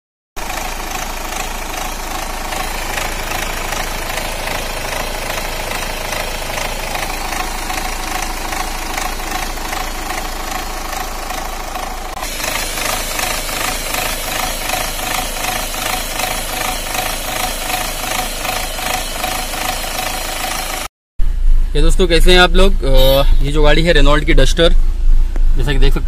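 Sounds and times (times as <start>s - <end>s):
car engine idling roughly: 0.4s - 20.9s.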